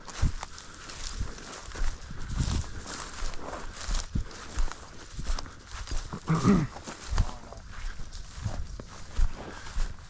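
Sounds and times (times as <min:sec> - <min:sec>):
brush rustling: 0:00.0 - 0:10.0
footsteps through brush: 0:00.0 - 0:10.0.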